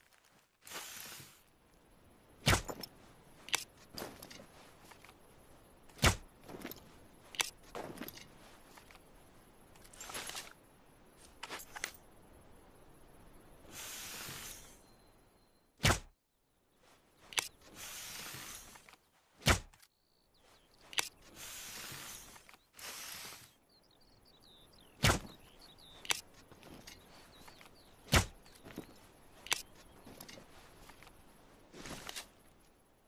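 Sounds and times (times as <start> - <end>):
hissing noise: 13.7 - 14.8.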